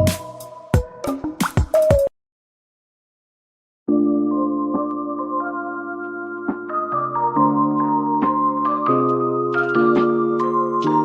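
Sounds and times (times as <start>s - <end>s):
electronic music beat: 0.0s - 2.1s, 4.5s - 11.0s.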